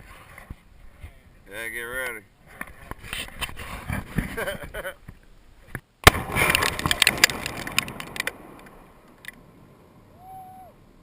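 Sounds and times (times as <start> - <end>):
explosive blast: 6.0 - 8.6
crackling after explosion: 6.0 - 10.6.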